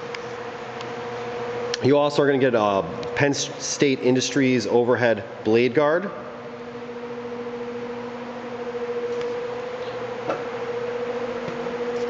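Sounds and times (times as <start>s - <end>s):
machine hum: 0.0s - 12.0s.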